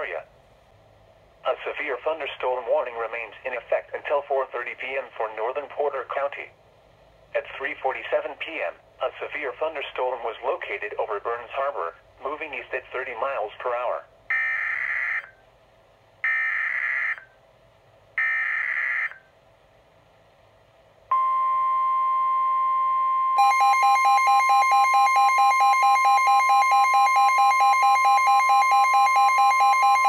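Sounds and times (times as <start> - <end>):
steady warning alarm tone: 14.3 - 15.4, 16.2 - 17.4, 18.2 - 19.3, 21.1 - 30.0.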